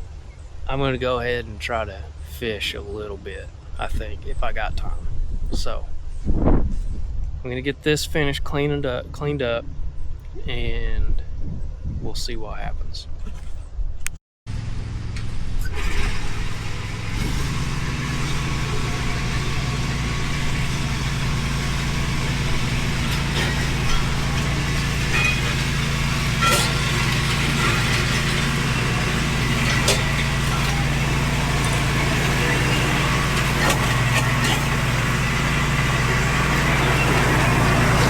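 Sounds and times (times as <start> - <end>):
mower engine running: 14.5 - 38.0.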